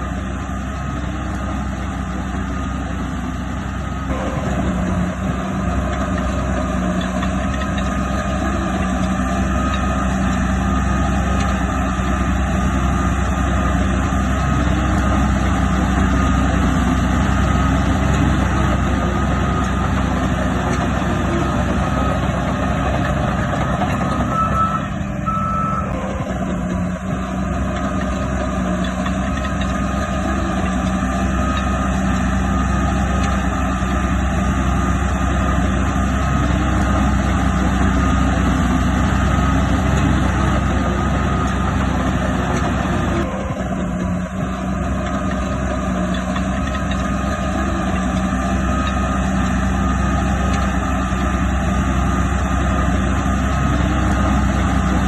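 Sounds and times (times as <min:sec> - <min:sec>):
heavy diesel machinery running: 0:00.0 - 0:55.0
reversing alarm beeps: 0:04.0 - 0:05.6, 0:16.0 - 0:26.8, 0:30.1 - 0:32.0, 0:36.4 - 0:43.9.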